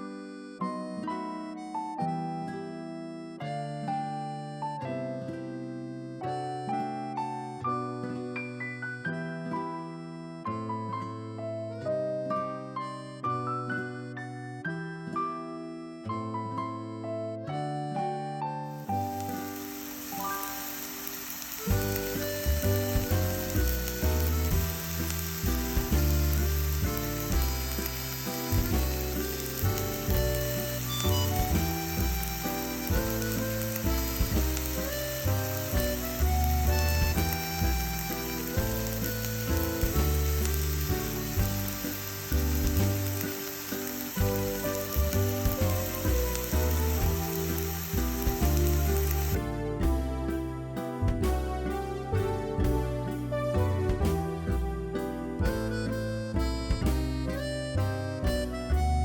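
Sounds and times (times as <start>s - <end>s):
background music: 0.0s - 59.0s
mushrooms sizzling in a pan: 18.8s - 49.6s.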